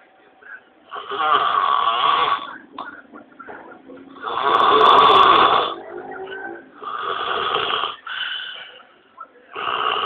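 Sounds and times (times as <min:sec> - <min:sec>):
man snoring loudly: 0:00.9 - 0:02.6, 0:04.2 - 0:05.8, 0:06.8 - 0:08.2, 0:09.5 - 0:10.0.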